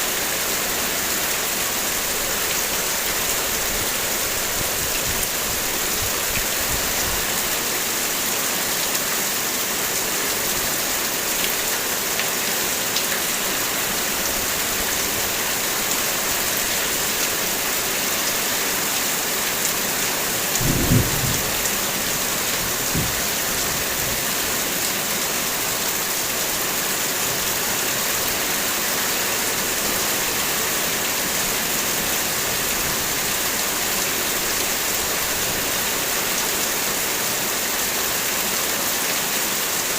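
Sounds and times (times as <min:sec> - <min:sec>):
heavy rain: 0:00.0 - 0:39.9.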